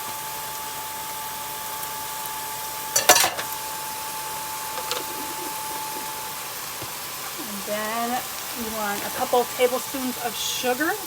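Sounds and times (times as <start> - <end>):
vegetables sizzling in a pan: 0.0 - 11.0
utensil clattering against dish: 3.0 - 3.6, 4.8 - 5.1.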